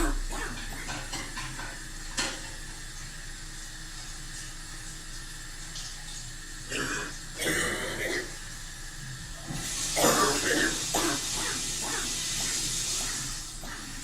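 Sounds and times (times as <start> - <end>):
water running from tap: 0.0 - 14.0
person coughing: 6.7 - 8.3, 10.0 - 11.6.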